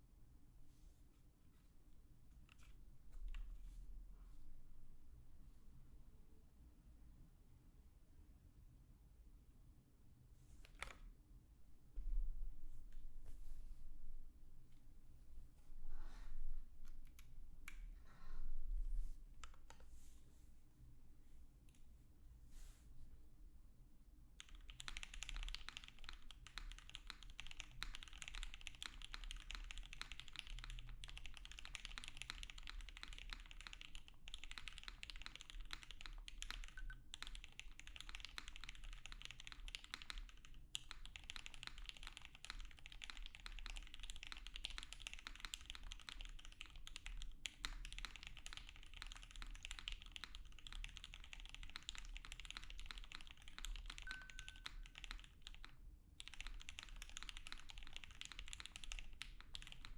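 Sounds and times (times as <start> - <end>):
mechanical keyboard typing: 24.4 - 59.9.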